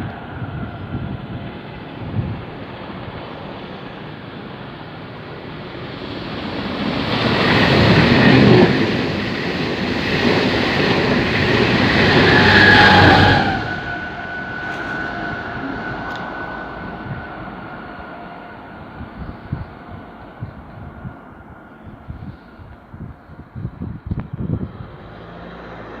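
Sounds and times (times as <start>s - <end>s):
train passing at speed: 0.0s - 26.0s
faint whine: 12.1s - 24.4s.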